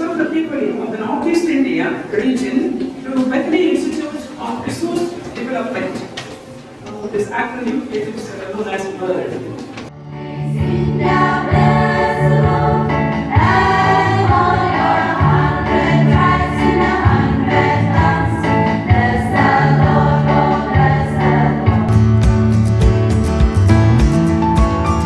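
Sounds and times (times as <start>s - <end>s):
choir singing in harmony: 9.7s - 22.2s.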